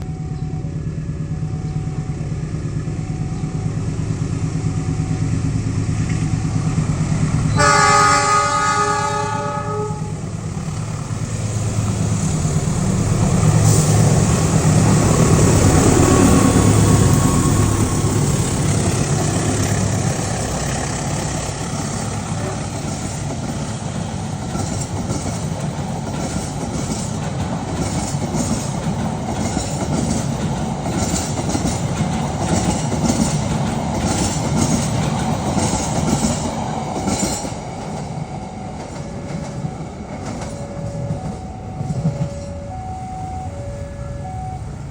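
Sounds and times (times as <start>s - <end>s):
diesel locomotive engines: 0.0s - 44.9s
train horn: 7.5s - 10.3s
train wheels clacking over rail joints: 12.6s - 42.5s.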